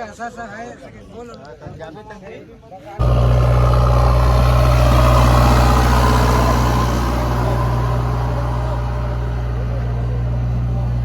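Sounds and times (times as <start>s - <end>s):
heavy diesel engine running: 3.0s - 11.0s.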